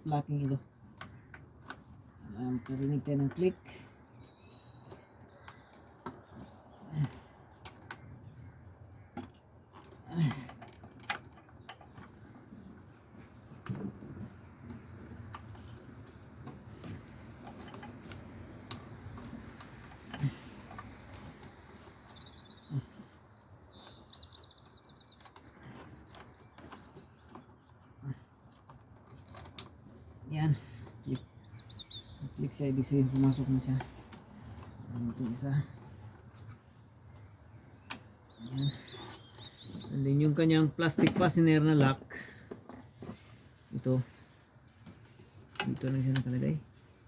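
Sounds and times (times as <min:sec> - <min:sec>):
bird chirping: 0:00.1 - 0:09.4, 0:20.2 - 0:27.7, 0:30.3 - 0:42.4.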